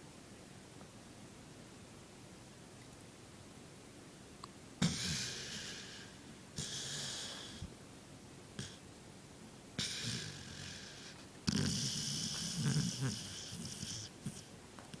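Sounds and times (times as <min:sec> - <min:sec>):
rasping hissy snoring: 0:04.8 - 0:07.7, 0:08.6 - 0:08.8, 0:09.8 - 0:14.5.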